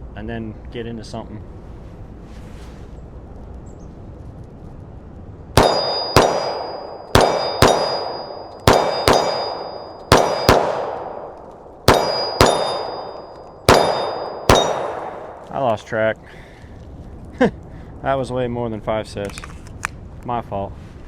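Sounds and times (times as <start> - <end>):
steel targets ringing: 5.6 - 15.4
pistol shots: 5.6 - 15.6.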